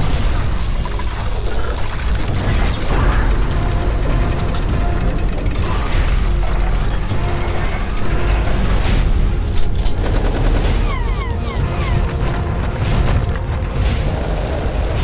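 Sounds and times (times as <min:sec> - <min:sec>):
gunfire bursts: 0:02.2 - 0:11.2.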